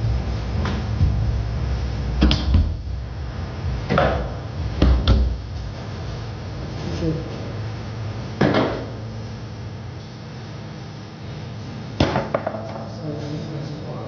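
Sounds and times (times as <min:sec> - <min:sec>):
low rumble: 0:00.0 - 0:10.4
foosball ball clacking: 0:12.0 - 0:12.9.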